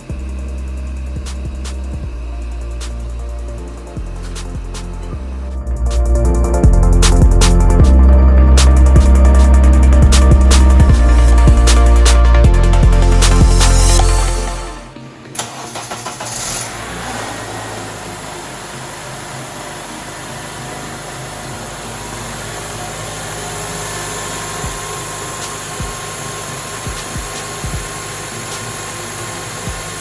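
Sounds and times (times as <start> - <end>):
car engine starting and idling: 0.0 - 30.0.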